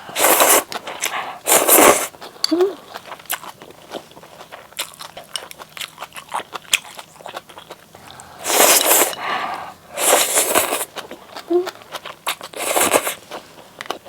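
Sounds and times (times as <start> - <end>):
wet chewing: 0.7 - 14.0
slurp: 8.4 - 10.9.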